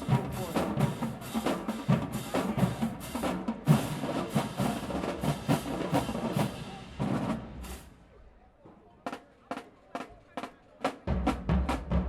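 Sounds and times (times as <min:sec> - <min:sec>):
snare and bass drums: 0:00.0 - 0:07.9, 0:09.0 - 0:12.0.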